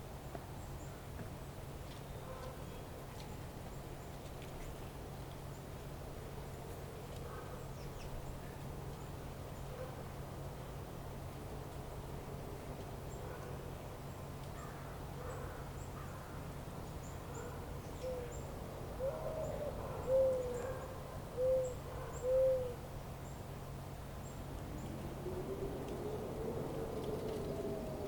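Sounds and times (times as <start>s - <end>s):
bird hooting: 19.0s - 22.9s
low rumble: 24.4s - 28.0s.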